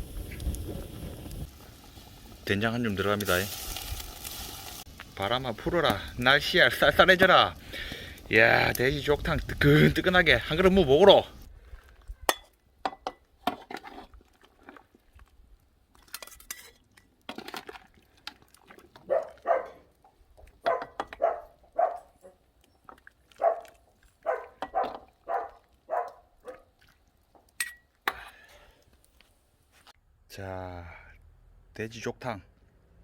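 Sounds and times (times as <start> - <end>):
cookware clinking: 12.3 - 13.2, 27.6 - 28.2.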